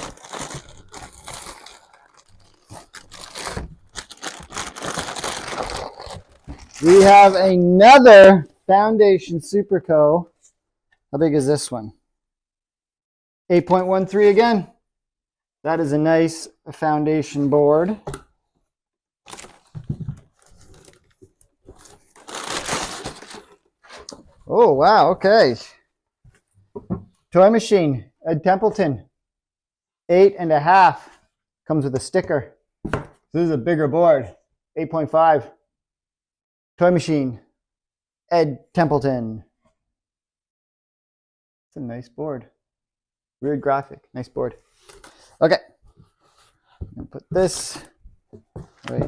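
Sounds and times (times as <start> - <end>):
packing paper crinkling: 0.0 - 7.4, 19.3 - 24.3.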